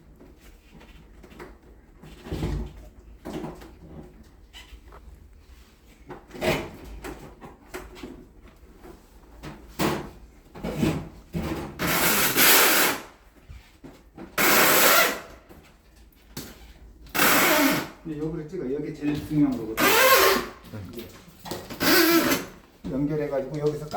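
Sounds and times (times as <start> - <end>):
loud rasping noises: 11.8 - 13.1, 14.4 - 15.4, 17.1 - 18.1, 19.6 - 22.7.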